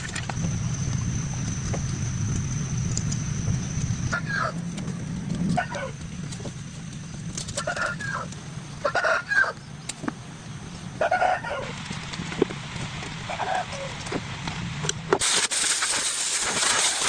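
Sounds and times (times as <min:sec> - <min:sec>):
low rumble: 0:00.0 - 0:08.9
chickens clucking: 0:07.6 - 0:09.6, 0:11.0 - 0:11.7.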